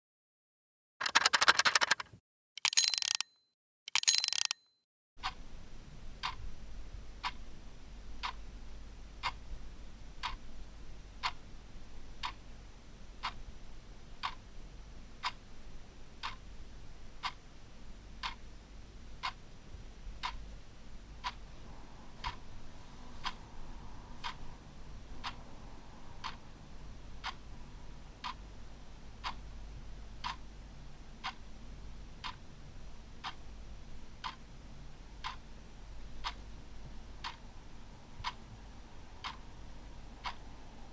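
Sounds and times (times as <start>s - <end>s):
clock ticking: 1.1s - 5.4s, 6.2s - 6.4s, 8.2s - 8.4s, 9.2s - 9.4s, 10.2s - 10.4s, 11.2s - 11.4s, 12.2s - 12.4s, 13.2s - 13.4s, 14.2s - 14.4s, 16.2s - 16.4s, 17.2s - 17.4s, 18.2s - 18.4s, 19.2s - 19.4s, 20.2s - 20.4s, 21.2s - 21.4s, 22.2s - 22.5s, 23.1s - 23.5s, 24.1s - 27.6s, 28.2s - 28.5s, 29.2s - 29.6s, 30.2s - 30.4s, 31.2s - 31.4s, 32.2s - 32.5s, 34.2s - 34.4s, 35.2s - 36.4s, 37.2s - 37.5s, 38.2s - 38.6s, 39.2s - 40.6s
faint low hum: 5.2s - 40.9s.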